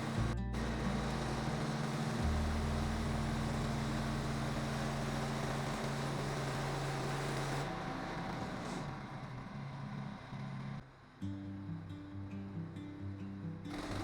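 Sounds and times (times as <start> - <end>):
small gas engine running: 0.0 - 14.0.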